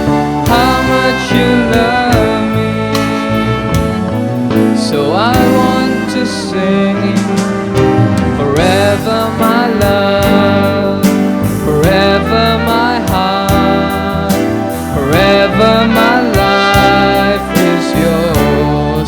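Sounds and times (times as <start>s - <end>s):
steady beat: 0.0s - 4.6s
keyboard chords: 0.0s - 19.0s
trumpet melody: 0.0s - 19.0s.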